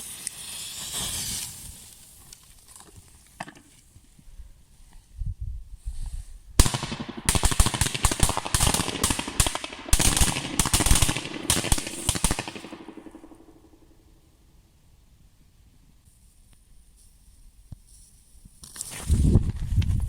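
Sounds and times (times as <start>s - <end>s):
firecrackers banging: 6.6s - 13.7s.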